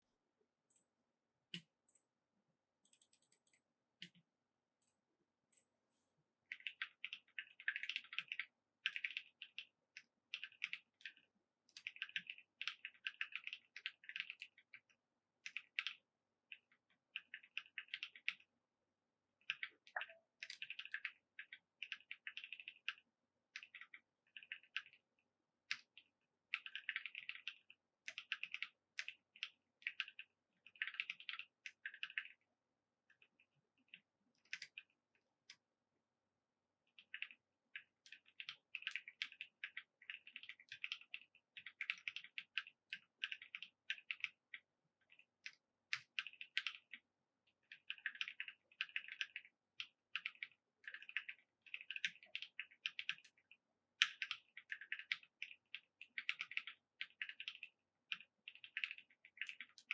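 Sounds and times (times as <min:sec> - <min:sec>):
mechanical keyboard typing: 0:02.9 - 0:04.2, 0:05.6 - 0:09.7, 0:26.5 - 0:32.3, 0:38.1 - 0:44.4, 0:45.9 - 0:46.9, 0:47.7 - 0:49.5, 0:50.1 - 0:53.3, 0:54.0 - 0:59.9.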